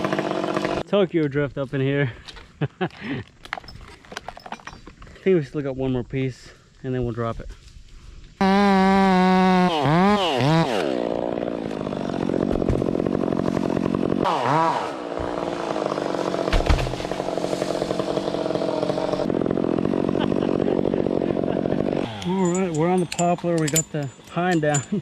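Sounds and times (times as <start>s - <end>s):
chainsaw cutting wood: 0.0s - 0.8s, 8.4s - 25.0s.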